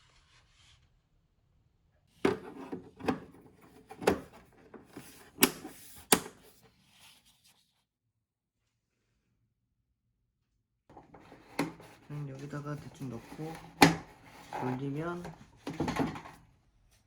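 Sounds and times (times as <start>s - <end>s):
plastic parts knocking and clattering: 2.2s - 6.4s, 12.8s - 16.4s.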